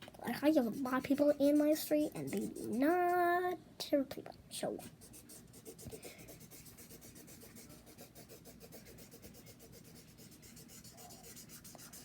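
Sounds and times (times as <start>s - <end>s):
colouring tool scribbling on paper: 0.4s - 3.0s, 5.0s - 12.0s.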